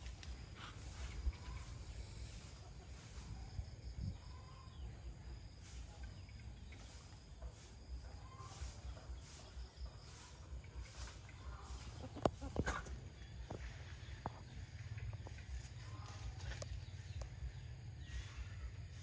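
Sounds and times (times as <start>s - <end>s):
constant low rumble: 0.0s - 19.0s
chickens clucking softly: 5.8s - 17.4s.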